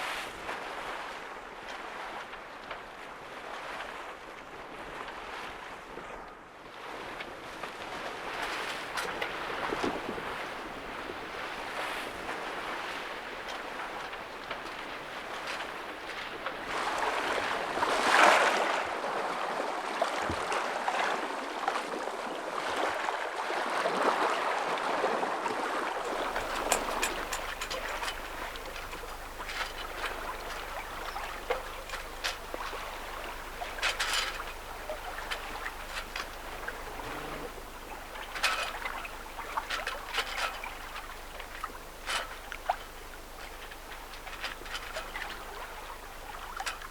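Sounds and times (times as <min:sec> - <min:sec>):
water rushing along a hull: 0:00.0 - 0:46.9
wind: 0:00.0 - 0:46.9
faint low hum: 0:26.0 - 0:46.9.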